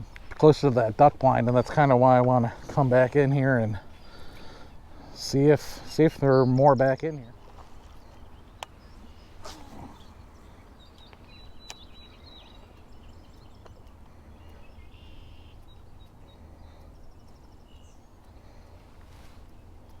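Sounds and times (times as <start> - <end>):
faint bird chirps and trills: 5.8 - 20.0
sharp clicks: 10.9 - 12.0.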